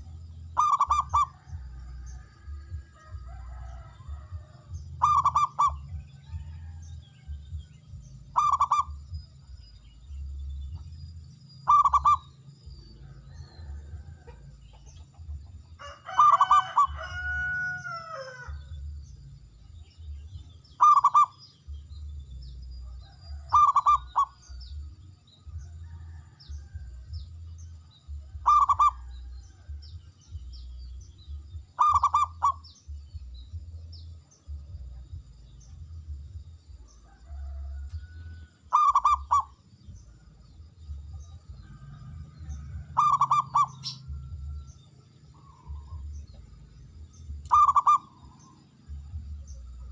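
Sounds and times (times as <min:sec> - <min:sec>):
dove cooing: 0:00.0 - 0:01.8, 0:03.0 - 0:06.5, 0:08.3 - 0:09.0, 0:11.6 - 0:12.3, 0:16.1 - 0:17.4, 0:20.8 - 0:21.4, 0:23.1 - 0:24.5, 0:28.4 - 0:29.1, 0:31.7 - 0:32.6, 0:38.7 - 0:39.6, 0:42.5 - 0:44.2, 0:47.5 - 0:48.5.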